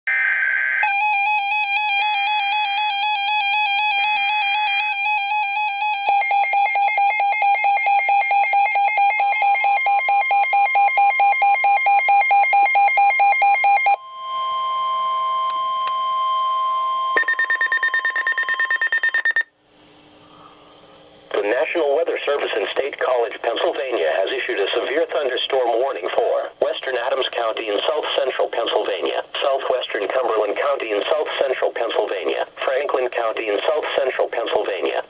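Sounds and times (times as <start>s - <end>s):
fast pulsing alarm: 0.1s - 19.5s
steady warning alarm tone: 0.1s - 19.5s
warbling electronic alarm: 0.1s - 19.5s.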